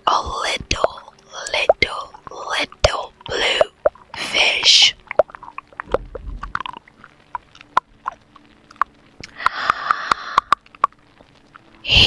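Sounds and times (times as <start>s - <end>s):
wet mouth clicks and smacks: 5.0s - 11.6s
breath: 9.3s - 10.6s.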